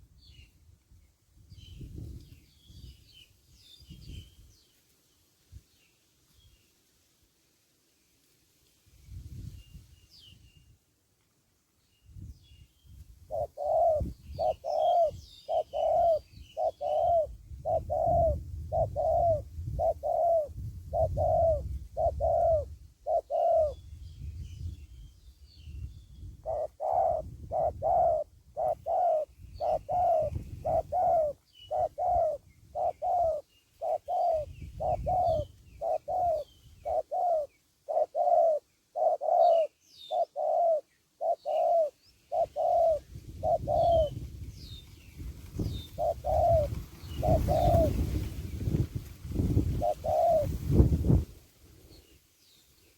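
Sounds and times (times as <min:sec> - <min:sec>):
small birds chirping: 0:11.7 - 0:50.5
dove cooing: 0:13.3 - 0:23.8, 0:26.4 - 0:44.4, 0:45.5 - 0:48.8, 0:49.4 - 0:51.2.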